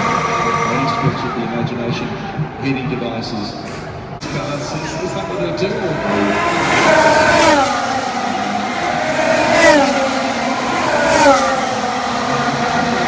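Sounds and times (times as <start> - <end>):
racing car engines: 0.0 - 13.0.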